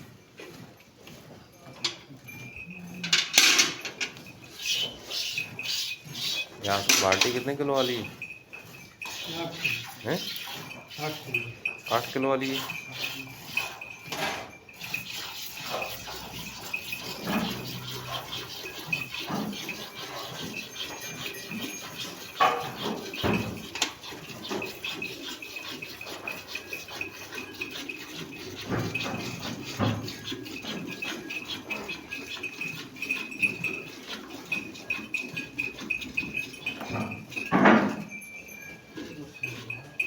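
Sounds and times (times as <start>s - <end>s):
livestock shuffling: 0.0s - 40.0s
knocks and rustles: 36.5s - 38.2s.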